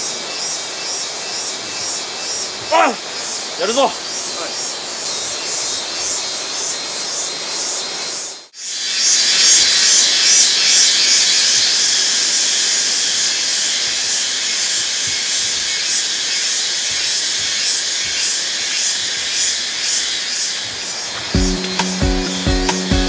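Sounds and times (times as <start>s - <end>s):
cicadas buzzing: 0.0s - 23.0s
music with steady beat: 21.4s - 23.0s.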